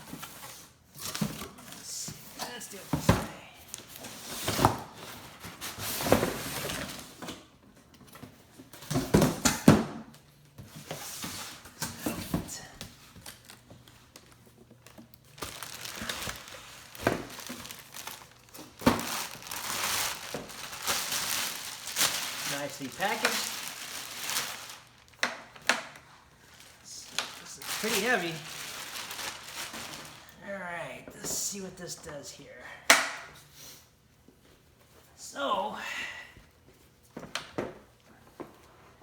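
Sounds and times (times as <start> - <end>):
packaging crinkling and rustling: 11.0 - 30.4
packaging tearing: 15.2 - 25.2, 26.6 - 30.3.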